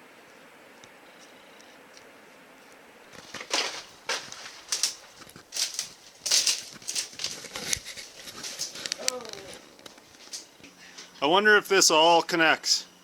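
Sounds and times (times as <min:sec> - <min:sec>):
footsteps crunching on loose rock: 0:03.1 - 0:10.5.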